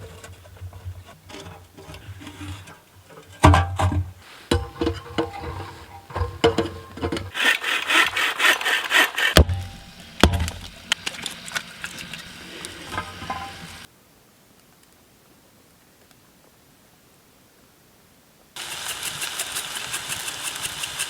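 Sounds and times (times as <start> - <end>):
saw cutting through wood: 7.3 - 10.1, 18.6 - 21.0.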